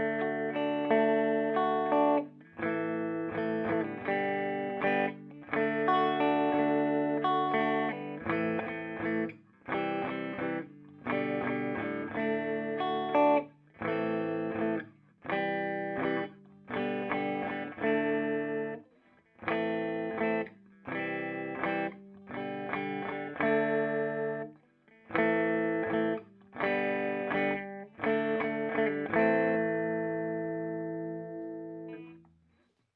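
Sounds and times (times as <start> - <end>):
clean electric guitar chords: 0.0 - 18.8, 19.4 - 24.5, 25.1 - 32.2.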